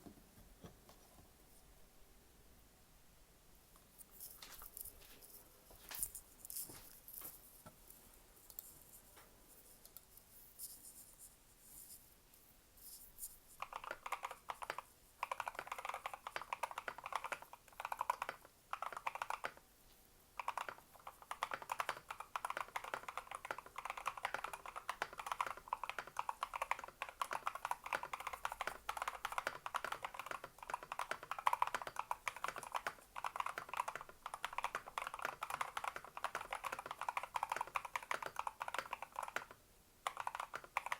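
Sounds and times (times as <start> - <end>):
mechanical keyboard typing: 13.6 - 19.6, 20.4 - 40.9.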